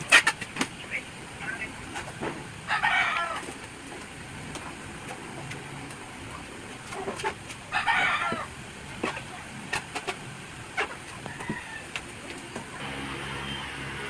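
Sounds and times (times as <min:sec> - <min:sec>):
chicken calling: 0:01.8 - 0:03.6, 0:06.3 - 0:10.0, 0:10.6 - 0:12.7.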